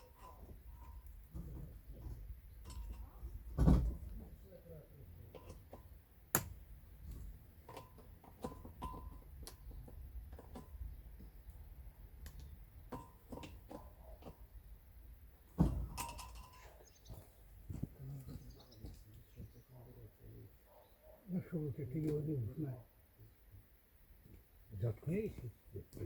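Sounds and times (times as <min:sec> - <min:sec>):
metal knocks and clinks: 0:00.0 - 0:04.0, 0:05.3 - 0:06.0, 0:07.6 - 0:10.9, 0:15.6 - 0:16.8.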